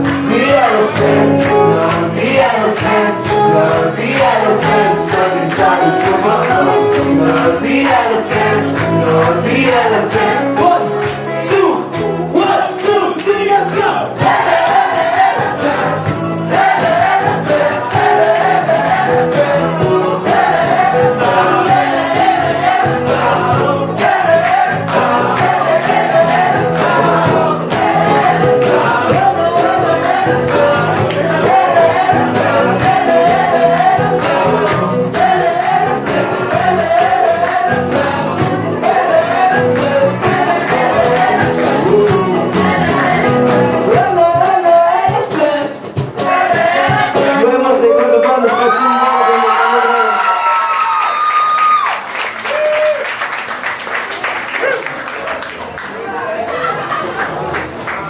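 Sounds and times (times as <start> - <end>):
bass guitar: 0.0 - 45.3
guitar: 0.0 - 49.8
keyboards: 0.0 - 49.8
voices singing: 0.0 - 50.1
drums: 14.0 - 47.6.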